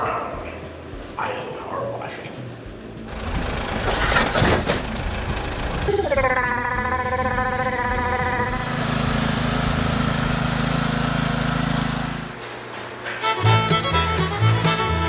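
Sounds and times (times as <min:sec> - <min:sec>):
low engine drone: 0:03.1 - 0:12.4.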